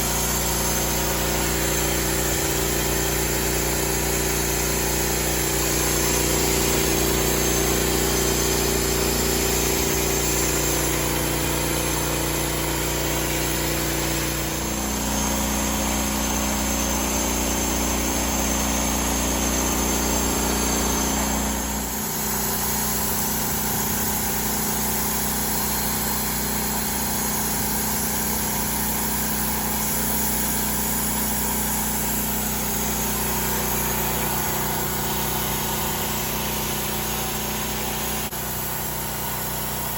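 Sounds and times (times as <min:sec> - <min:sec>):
sawmill engine running: 0:00.0 - 0:39.9.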